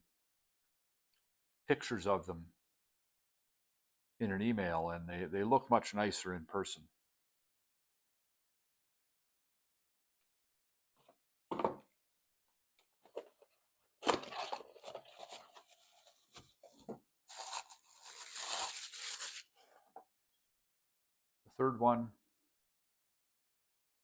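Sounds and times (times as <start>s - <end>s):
box packaging tearing and crinkling: 14.0s - 16.5s, 17.3s - 19.6s.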